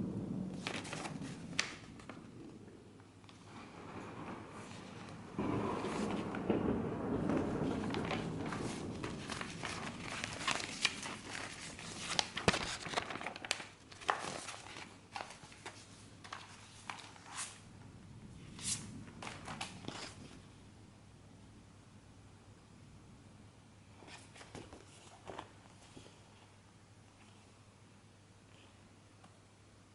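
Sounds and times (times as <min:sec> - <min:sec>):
plastic and paper rustling: 0:00.5 - 0:02.5, 0:03.2 - 0:17.6, 0:18.4 - 0:20.5, 0:24.0 - 0:26.6.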